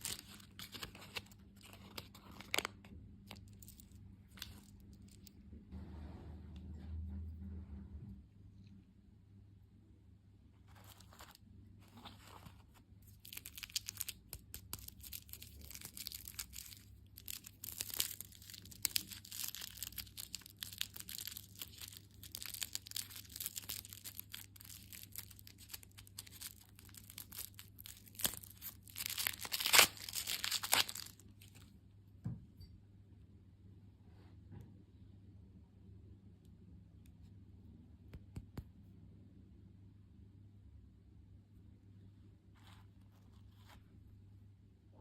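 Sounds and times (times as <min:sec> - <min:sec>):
plastic wrapper crinkling and tearing: 0:00.0 - 0:05.3, 0:10.7 - 0:31.7.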